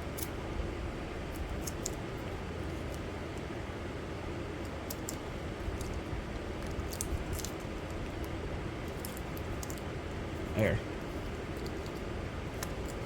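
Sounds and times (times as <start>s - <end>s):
low background hum: 0.0s - 13.0s
small items clicking and rattling: 4.6s - 9.9s, 11.2s - 13.0s.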